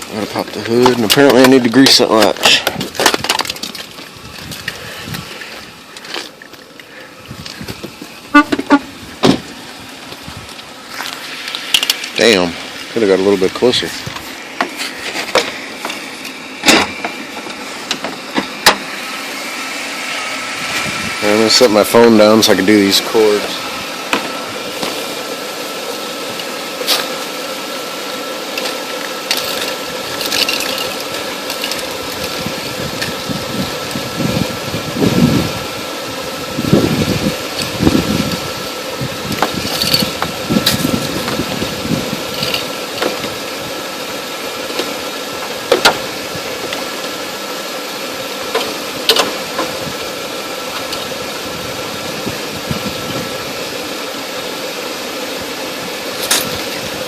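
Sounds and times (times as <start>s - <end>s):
car engine idling: 0.0s - 26.8s.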